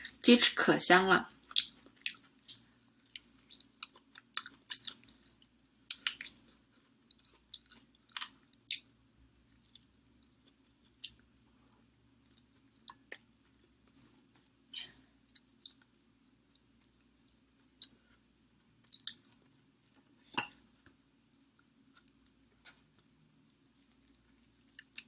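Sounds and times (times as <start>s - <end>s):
person chewing: 1.4s - 25.0s
mouth clicks and smacks: 1.5s - 6.4s, 15.3s - 15.9s, 18.8s - 19.4s, 21.9s - 25.0s.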